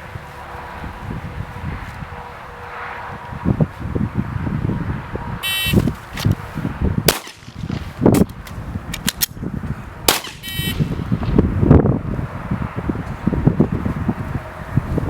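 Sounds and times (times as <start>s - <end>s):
wind rumbling on microphone: 0.0s - 15.0s
shot timer beep: 5.4s - 5.8s, 10.4s - 10.8s
pistol shots: 7.1s - 8.2s, 10.1s - 11.0s.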